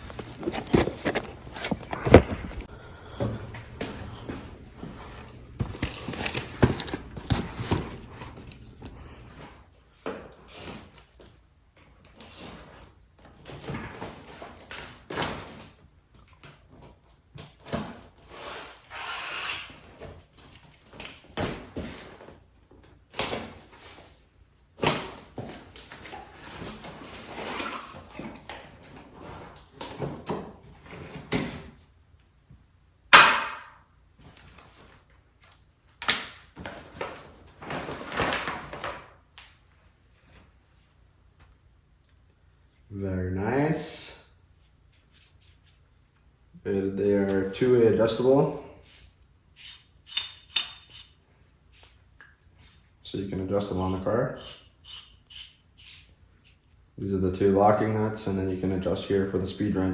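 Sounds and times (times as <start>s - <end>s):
parcel being unpacked: 0.0s - 2.7s, 5.2s - 9.0s.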